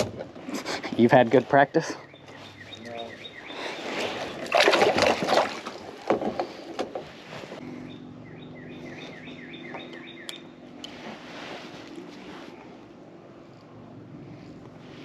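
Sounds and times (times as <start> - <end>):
water splashing around kayak: 3.6 - 7.6.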